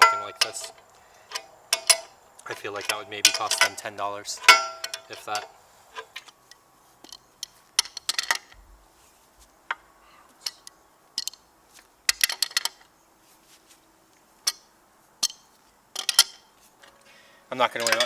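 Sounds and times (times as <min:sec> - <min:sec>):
hand tools clinking on metal bolts: 0:00.0 - 0:08.6, 0:10.4 - 0:11.5, 0:12.1 - 0:12.9, 0:14.4 - 0:16.9, 0:17.6 - 0:18.0.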